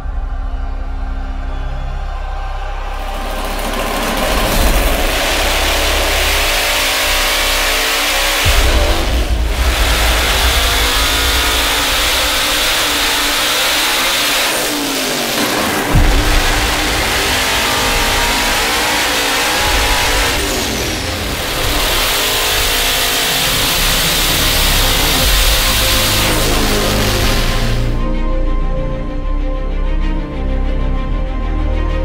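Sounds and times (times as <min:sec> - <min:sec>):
car engine revving on dyno: 0:03.0 - 0:28.0.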